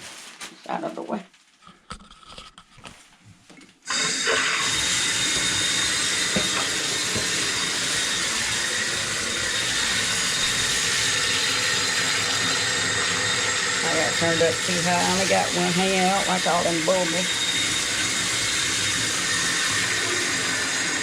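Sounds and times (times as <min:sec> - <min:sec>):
tap water running into bucket: 0:03.8 - 0:21.0.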